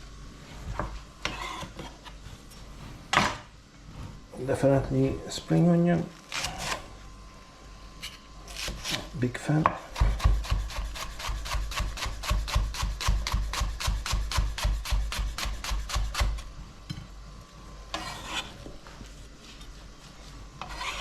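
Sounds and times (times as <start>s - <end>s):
knife scraping: 1.2s - 2.2s, 6.3s - 6.9s, 8.0s - 9.2s, 9.9s - 16.4s, 17.9s - 19.8s, 20.6s - 21.0s
knife chopping on cutting board: 8.6s - 16.4s.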